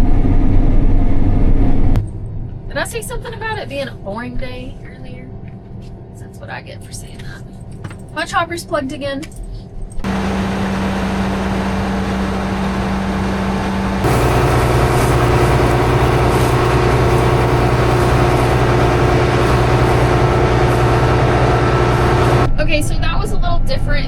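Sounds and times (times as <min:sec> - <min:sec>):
combine harvester running: 0:10.1 - 0:22.5.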